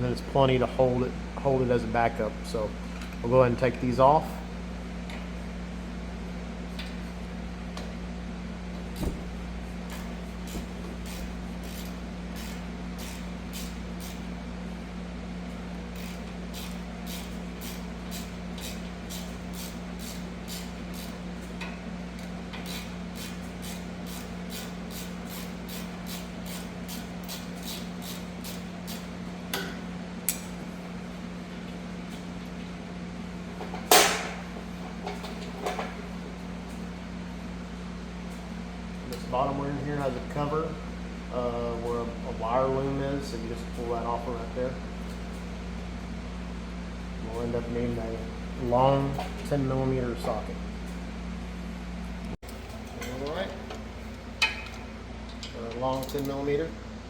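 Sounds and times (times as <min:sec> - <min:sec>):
steady low hum: 0:00.0 - 0:57.0
tools clattering: 0:54.4 - 0:56.5.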